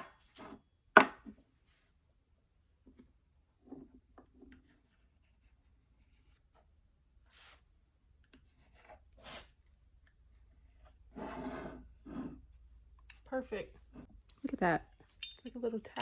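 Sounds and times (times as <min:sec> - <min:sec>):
pencil scratching on wood: 0:08.4 - 0:09.6.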